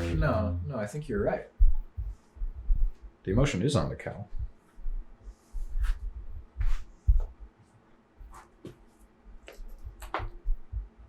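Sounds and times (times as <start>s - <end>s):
low thuds: 1.1s - 3.6s.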